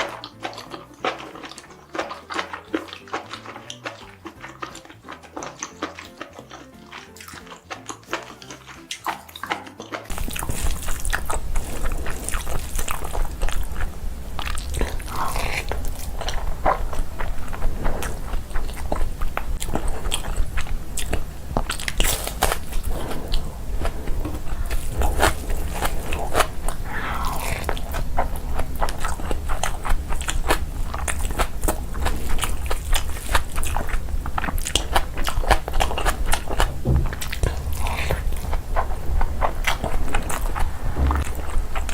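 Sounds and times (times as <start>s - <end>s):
person chewing crunchy food: 0.0s - 41.9s
low hum: 10.1s - 41.9s.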